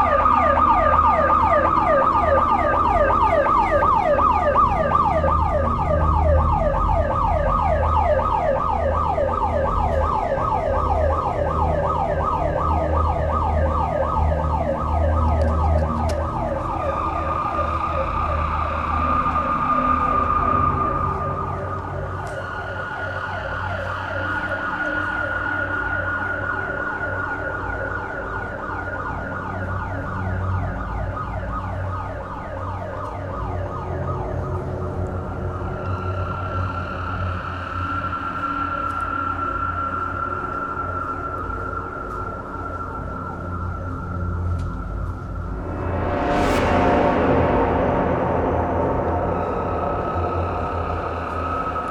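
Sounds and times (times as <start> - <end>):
steady alarm tone: 0.0 - 29.4, 33.5 - 51.9
alarm falling sweep: 45.2 - 51.9.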